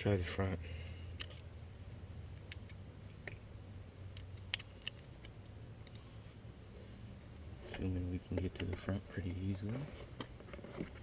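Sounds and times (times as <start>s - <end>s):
low steady hum: 0.0s - 11.0s
handling clicks and taps: 7.7s - 11.0s.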